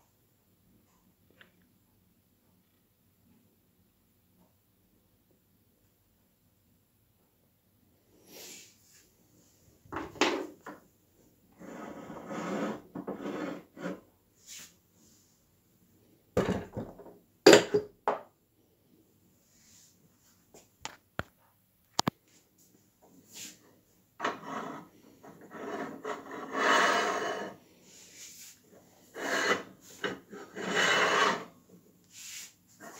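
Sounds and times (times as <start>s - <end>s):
rubbing and scraping: 11.6s - 14.7s, 24.2s - 32.9s.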